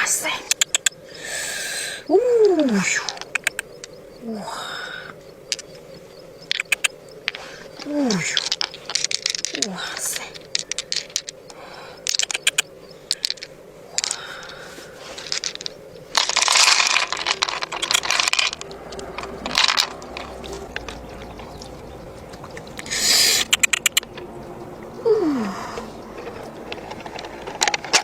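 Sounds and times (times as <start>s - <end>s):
clicks and scrapes of small objects: 2.5s - 4.0s, 6.5s - 21.6s, 26.2s - 28.0s
rustling: 5.2s - 28.0s.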